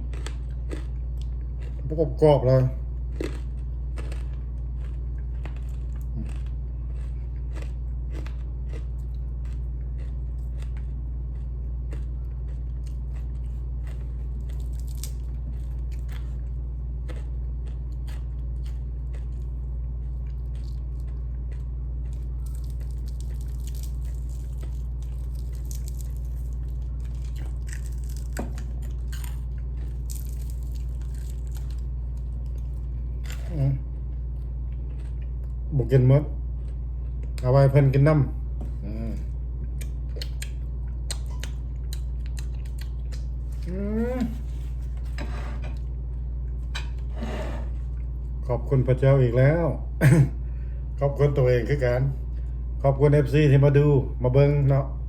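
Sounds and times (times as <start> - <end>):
person chewing crispy food: 0.0 - 35.7, 36.4 - 37.4, 38.6 - 45.2
steady low hum: 0.0 - 55.0.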